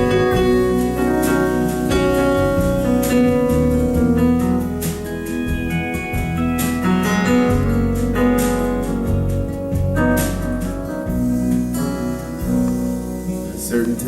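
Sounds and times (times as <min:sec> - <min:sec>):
sharp drum hits: 0:00.0 - 0:13.0
keyboard chords: 0:00.0 - 0:14.0
live band music: 0:00.0 - 0:14.0
sustained low notes: 0:00.0 - 0:14.0.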